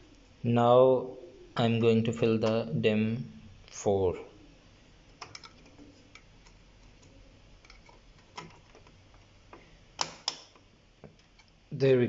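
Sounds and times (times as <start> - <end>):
sharp plastic snaps: 10.0 - 11.6.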